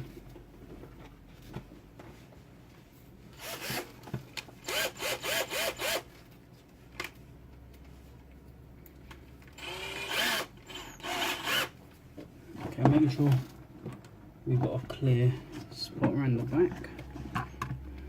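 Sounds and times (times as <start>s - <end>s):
power drill motor spinning: 3.4s - 3.9s, 4.6s - 6.1s, 9.6s - 11.8s.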